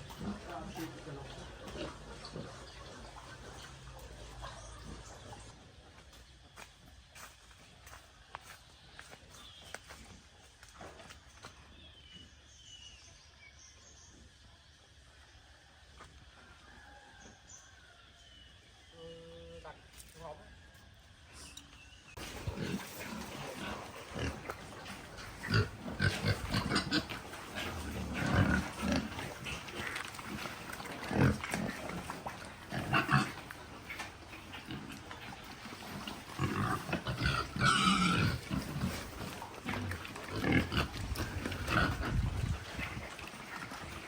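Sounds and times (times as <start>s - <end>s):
pigs grunting: 0.0s - 5.5s, 22.2s - 44.0s.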